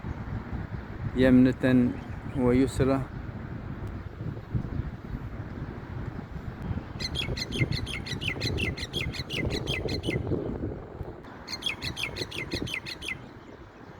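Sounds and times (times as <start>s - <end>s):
wind rumble on microphone: 0.0s - 13.9s.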